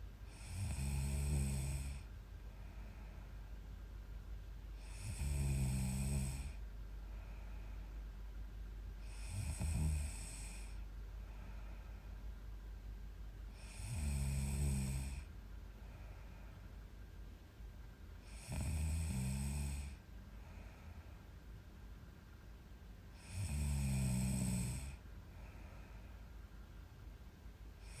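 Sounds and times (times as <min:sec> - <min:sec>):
quiet breathing: 0:00.0 - 0:28.0
woman snoring: 0:00.3 - 0:02.1, 0:04.8 - 0:06.6, 0:09.0 - 0:10.8, 0:13.5 - 0:15.3, 0:18.2 - 0:20.0, 0:23.1 - 0:25.0, 0:27.8 - 0:28.0.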